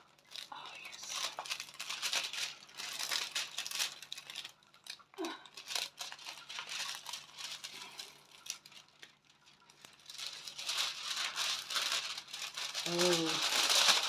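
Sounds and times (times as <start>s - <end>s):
rustling and crinkling plastic: 0.0s - 14.0s.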